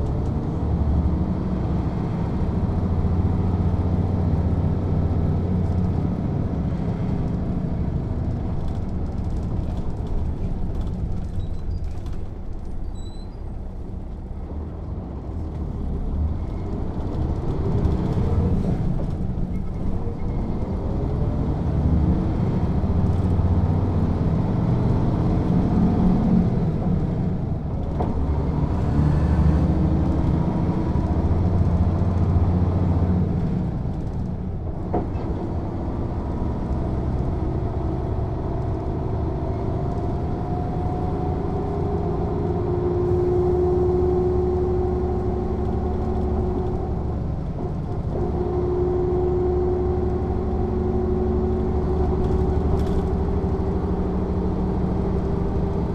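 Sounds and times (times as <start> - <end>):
diesel bus engine under load: 0.0 - 55.9
whine: 43.1 - 45.3.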